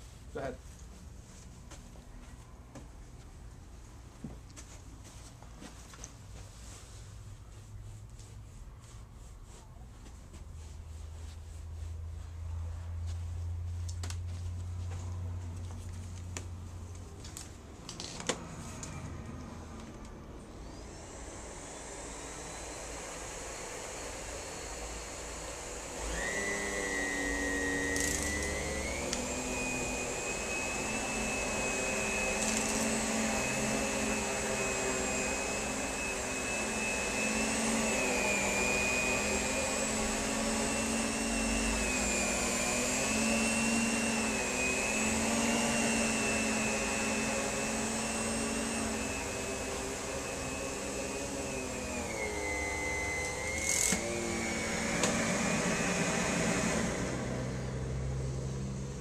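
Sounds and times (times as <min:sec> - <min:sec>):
vacuum cleaner motor whine: 0:17.3 - 0:59.0.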